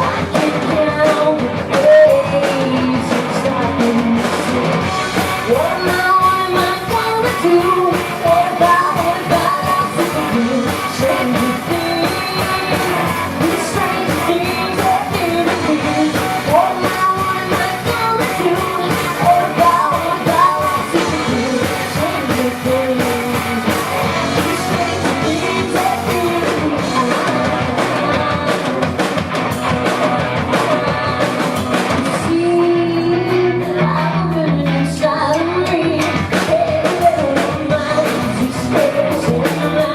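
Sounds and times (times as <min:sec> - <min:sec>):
drums: 0:00.0 - 0:39.9
electric guitars: 0:00.0 - 0:39.9
singer: 0:00.0 - 0:39.9.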